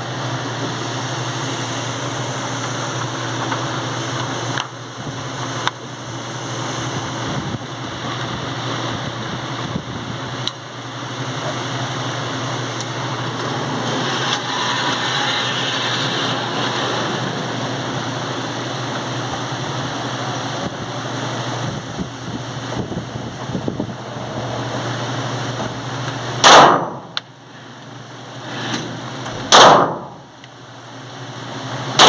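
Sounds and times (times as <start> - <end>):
steady background drone: 0.0 - 32.0
pistol shot with echo: 26.4 - 27.1, 29.5 - 30.2.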